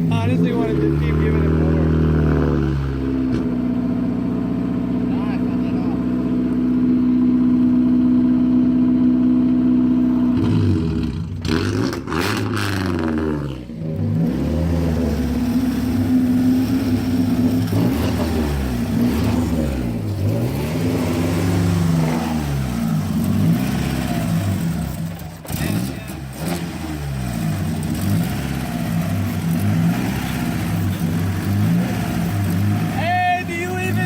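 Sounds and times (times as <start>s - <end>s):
car engine revving: 0.0s - 34.0s.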